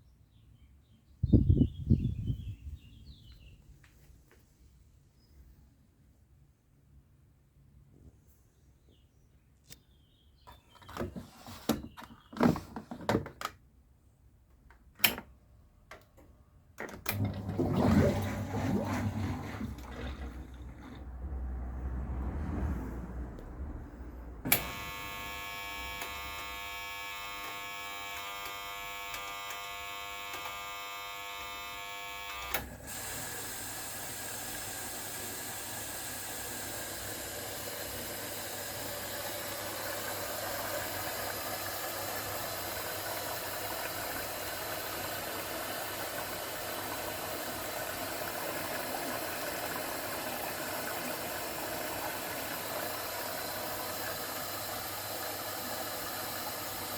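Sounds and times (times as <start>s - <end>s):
washing machine click: 16.8s - 18.0s
washing machine whine: 16.8s - 56.9s
washing machine rushing water: 16.9s - 22.7s, 24.5s - 56.9s.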